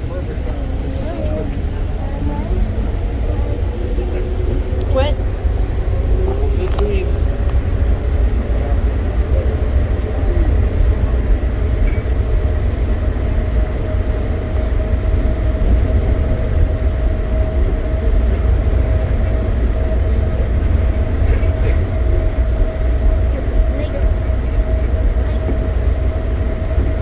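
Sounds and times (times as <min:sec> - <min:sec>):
train rumbling: 0:00.0 - 0:27.0.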